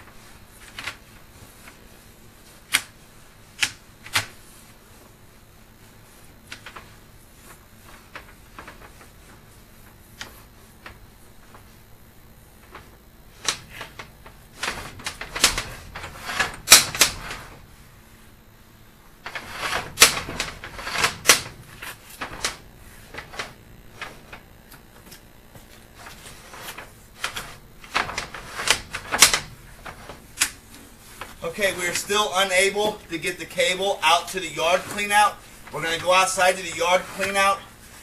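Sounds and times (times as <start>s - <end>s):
cable clattering against pipe: 19.2s - 24.1s, 26.7s - 30.6s.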